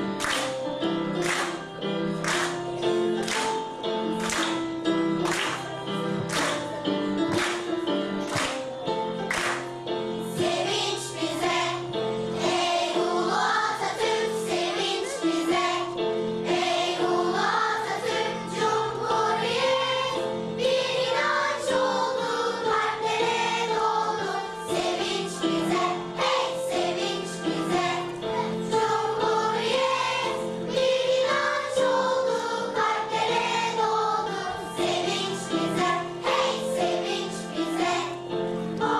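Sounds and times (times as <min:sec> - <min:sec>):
instrumental accompaniment with beat: 0:00.0 - 0:11.7
choir singing: 0:10.1 - 0:38.9.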